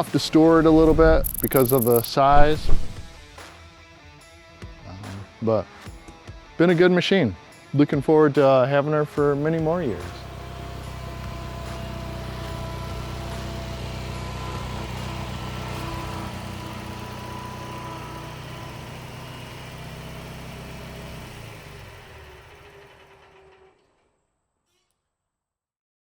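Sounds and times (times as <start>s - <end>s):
mower engine running: 9.8s - 23.4s.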